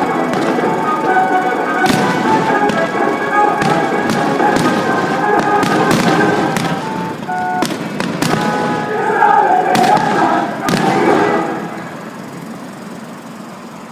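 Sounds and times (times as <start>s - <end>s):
music with held notes: 0.0s - 7.6s
fireworks bangs and crackles: 0.0s - 12.5s.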